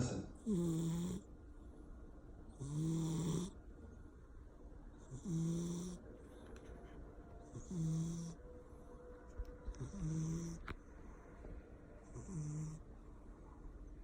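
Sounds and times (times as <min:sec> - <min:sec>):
cat snoring: 0:00.4 - 0:01.3, 0:02.5 - 0:03.6, 0:05.0 - 0:06.4, 0:07.4 - 0:08.4, 0:09.7 - 0:10.8, 0:12.0 - 0:12.9.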